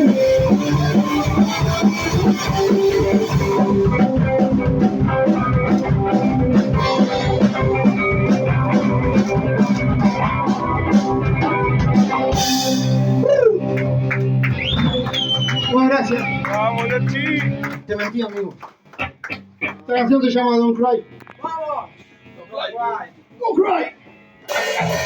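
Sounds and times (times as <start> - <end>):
keyboard notes: 0.0 - 17.9
drum kit beat: 0.0 - 19.8, 24.5 - 25.0
electric guitar: 0.0 - 20.4, 21.0 - 22.4, 24.0 - 25.0.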